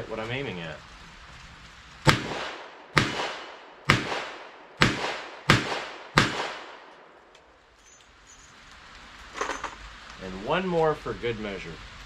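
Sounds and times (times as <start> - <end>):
revolver gunshots with echo: 2.1 - 6.9.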